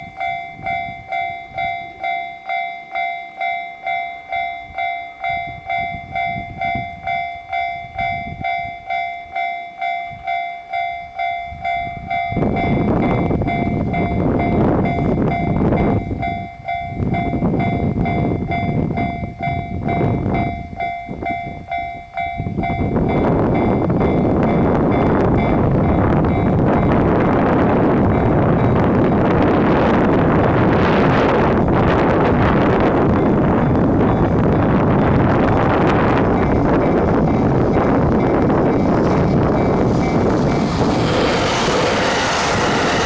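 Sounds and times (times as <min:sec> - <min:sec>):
train passing over crossing: 0:00.0 - 0:43.0
level-crossing alarm dinging: 0:32.8 - 0:43.0.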